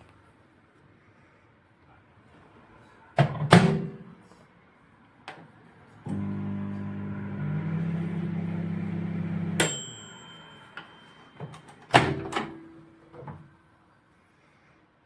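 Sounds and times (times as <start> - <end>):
microwave door clicks and clunk: 3.2 - 4.0, 11.4 - 13.4
microwave oven humming: 6.0 - 13.5
microwave bell ding: 9.1 - 11.9.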